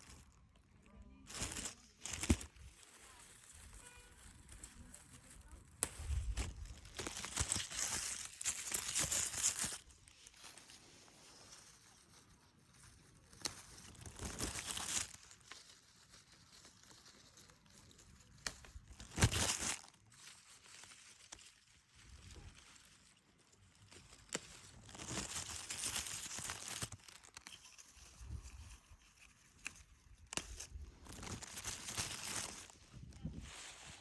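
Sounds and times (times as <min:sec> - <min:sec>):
leafy plants rustling: 0:01.2 - 0:34.0
plant stems snapping: 0:18.4 - 0:19.9.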